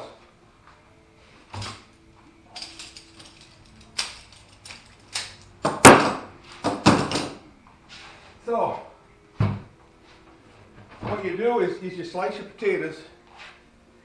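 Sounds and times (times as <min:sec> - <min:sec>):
objects knocking and clattering: 0:02.6 - 0:07.4.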